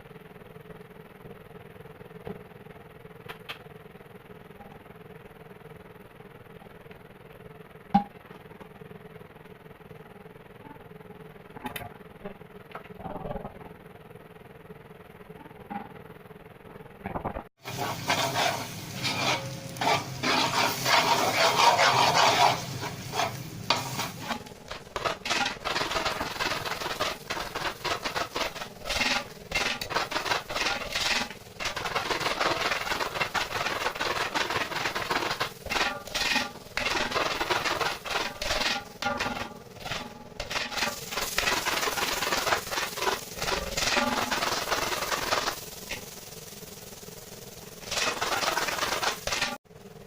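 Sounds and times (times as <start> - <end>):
ladle scraping a pan: 17.6 - 46.0, 47.8 - 49.6
food sizzling in a pan: 17.6 - 49.6.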